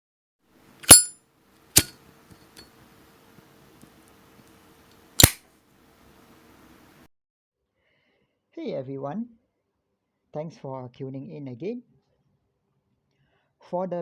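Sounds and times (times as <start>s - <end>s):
lighter flint wheel strike: 0.8s - 1.1s, 1.8s - 2.7s, 5.2s - 5.4s
lighter lid clinking open: 0.8s - 1.1s, 1.8s - 2.7s, 5.2s - 5.4s
lighter lid snapping shut: 0.8s - 1.1s, 5.2s - 5.4s.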